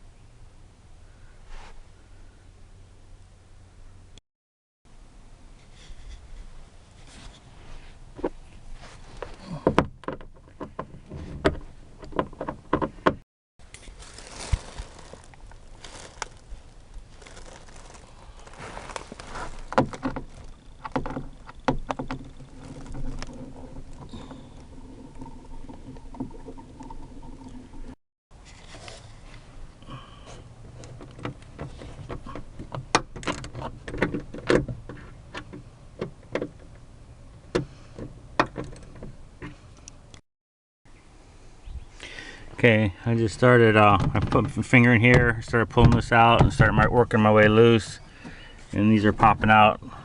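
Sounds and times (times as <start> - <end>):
scraping and handling noise: 13.6 - 29.5.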